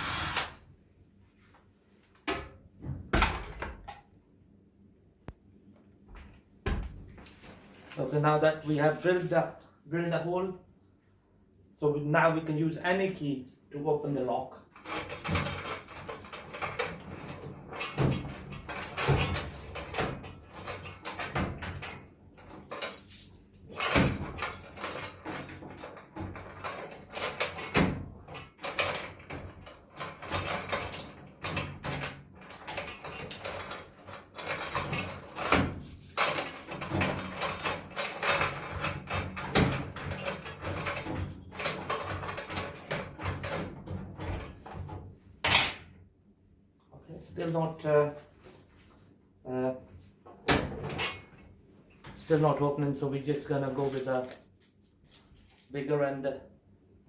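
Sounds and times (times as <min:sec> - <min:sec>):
key rattling in metal lock: 0:08.6 - 0:09.7, 0:14.8 - 0:43.8, 0:53.6 - 0:55.8.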